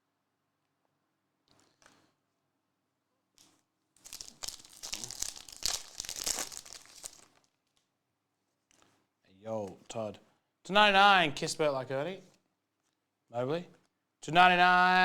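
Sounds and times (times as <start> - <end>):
wrapper crinkling as torn open: 3.4 - 7.9.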